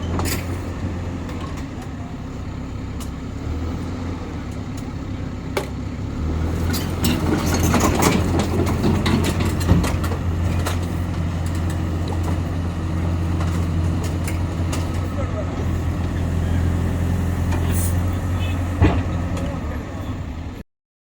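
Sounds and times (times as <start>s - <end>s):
excavator diesel engine running: 0.0s - 20.6s
sharp metallic knocks and clatter: 6.6s - 12.5s.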